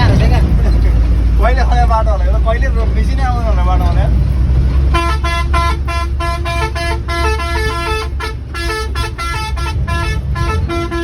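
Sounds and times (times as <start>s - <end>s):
engine rumbling: 0.0s - 11.0s
musical vehicle horn tune: 4.9s - 11.0s.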